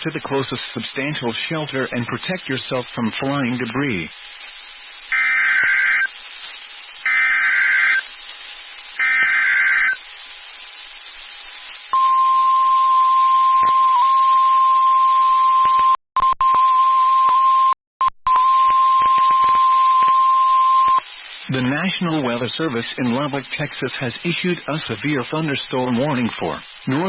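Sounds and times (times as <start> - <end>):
radio hiss: 0.0 - 12.1, 19.0 - 27.0
static clicks: 2.0 - 12.0, 18.2 - 20.2, 20.8 - 27.0
steady warning alarm tone: 5.1 - 6.1, 7.0 - 8.0, 9.0 - 10.0.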